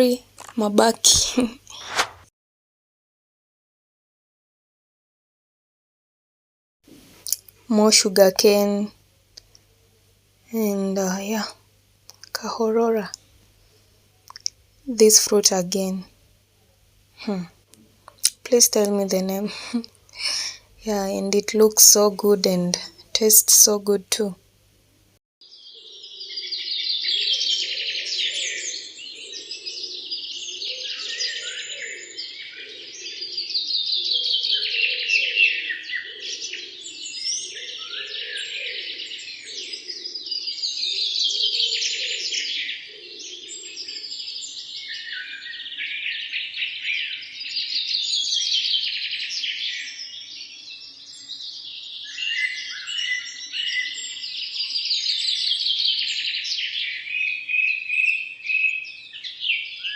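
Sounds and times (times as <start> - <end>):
songbirds trilling: 25.4 - 59.9.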